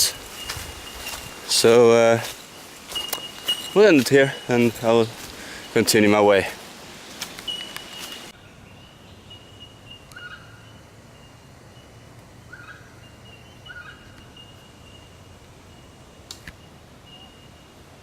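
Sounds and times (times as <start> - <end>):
faint bird calls: 7.1 - 11.4, 12.5 - 15.9.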